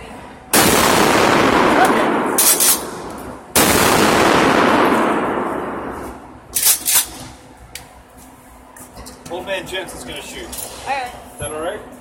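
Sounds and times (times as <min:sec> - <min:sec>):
shotgun blasts: 0:00.5 - 0:05.9.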